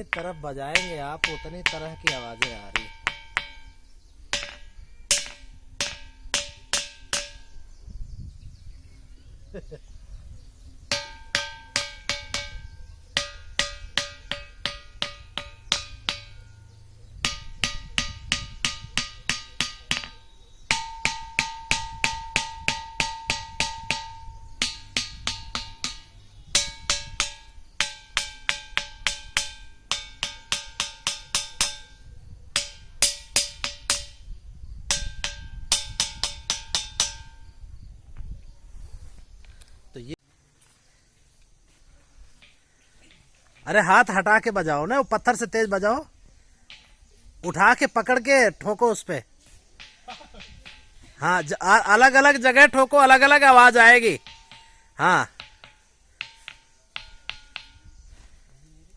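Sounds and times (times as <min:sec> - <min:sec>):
stone striking ringing rock: 0:00.0 - 0:07.8, 0:10.9 - 0:37.6, 0:49.6 - 0:58.2.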